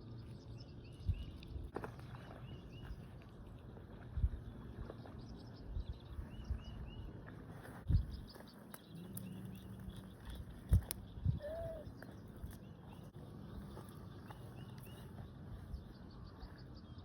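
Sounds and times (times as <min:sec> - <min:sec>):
birds chirping: 0:00.0 - 0:17.0
low bird call: 0:07.9 - 0:17.0.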